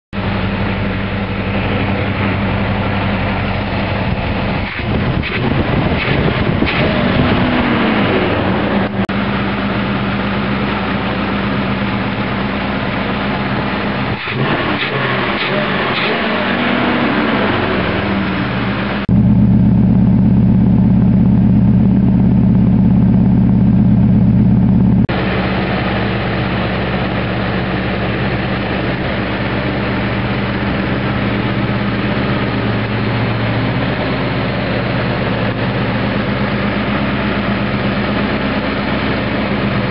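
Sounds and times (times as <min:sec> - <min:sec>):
engine idling: 0:00.1 - 0:39.9.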